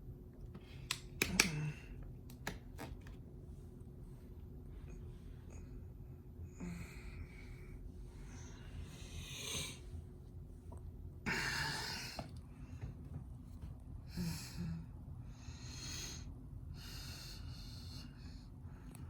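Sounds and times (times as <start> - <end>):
steady low hum: 0.0 - 19.0
person breathing: 4.6 - 10.1, 11.3 - 13.0, 14.0 - 19.0.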